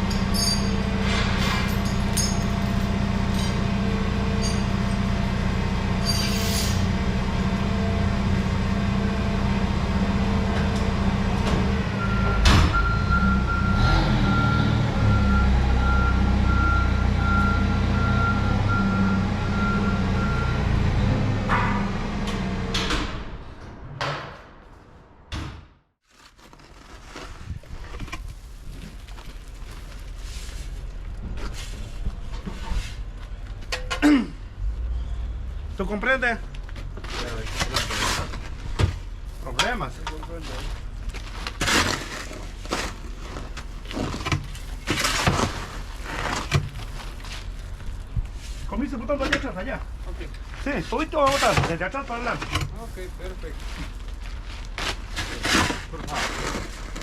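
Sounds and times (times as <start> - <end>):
truck engine running: 0.0 - 22.8.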